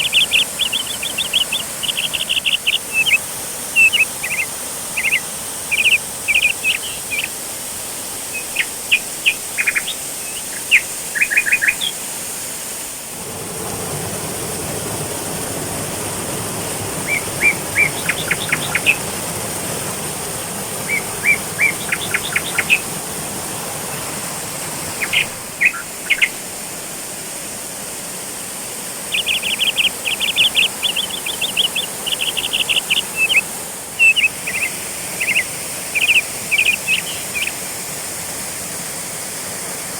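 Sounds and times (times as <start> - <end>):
small birds chirping: 0.0 - 12.0, 16.6 - 26.7, 29.0 - 37.7
waterfall rushing: 0.0 - 39.9.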